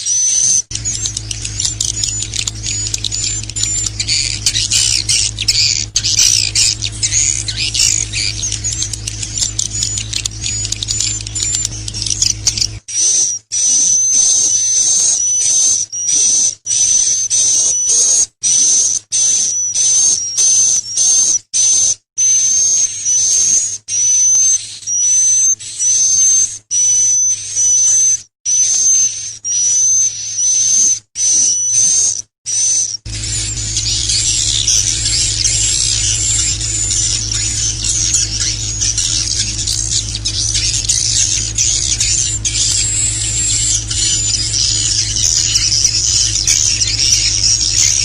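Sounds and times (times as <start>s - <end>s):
songbird whistling: 0.0s - 48.0s.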